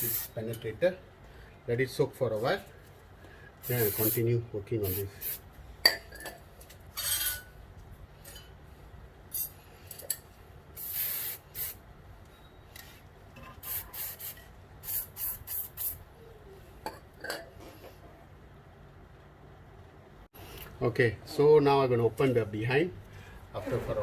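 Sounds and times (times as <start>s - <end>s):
aerosol spray hissing: 0.0s - 0.3s, 3.6s - 4.2s, 10.8s - 11.8s.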